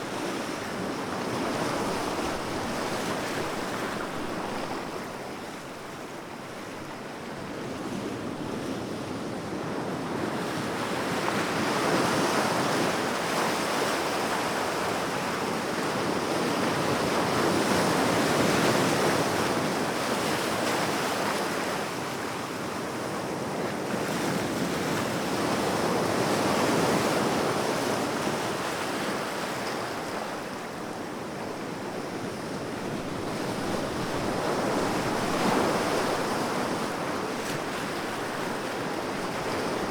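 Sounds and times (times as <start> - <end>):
small waves breaking on shore: 23.9 - 39.9.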